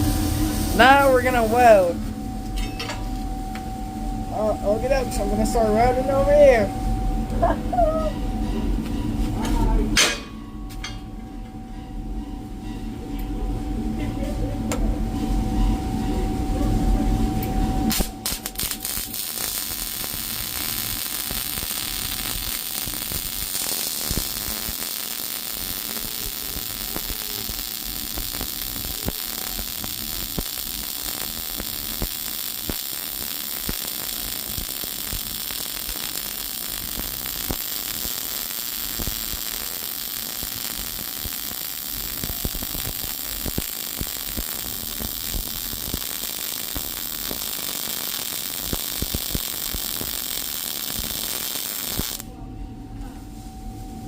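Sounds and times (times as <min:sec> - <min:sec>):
welding arc crackling: 0:00.0 - 0:03.3, 0:04.3 - 0:06.7, 0:17.8 - 0:52.3.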